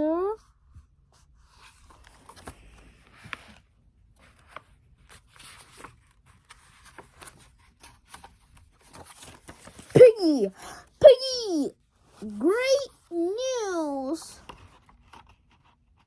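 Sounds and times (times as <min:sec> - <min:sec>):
paper rustling: 0:01.2 - 0:10.6, 0:13.8 - 0:16.0.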